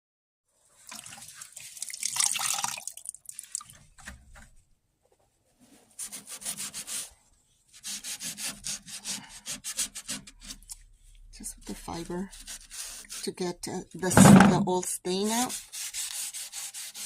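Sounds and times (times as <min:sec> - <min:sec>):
pad scrubbing on wood: 0:11.8 - 0:13.4, 0:15.3 - 0:17.0.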